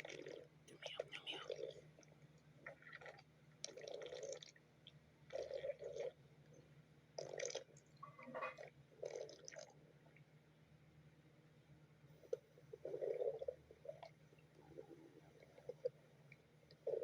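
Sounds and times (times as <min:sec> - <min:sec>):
stomach growling: 0:00.0 - 0:04.6, 0:05.3 - 0:06.2, 0:07.2 - 0:10.2, 0:12.2 - 0:16.0, 0:16.7 - 0:17.0.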